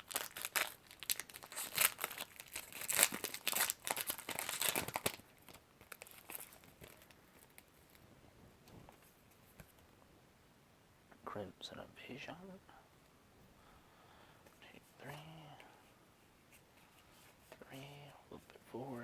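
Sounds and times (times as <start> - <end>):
foil wrapper tearing and crinkling: 0.0 - 7.7
wrapper rustling: 0.0 - 8.0.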